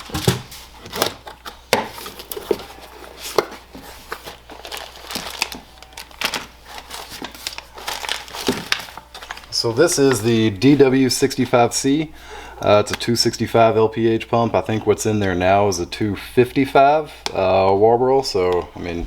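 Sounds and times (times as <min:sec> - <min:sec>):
packaging crinkling: 0:00.0 - 0:11.0.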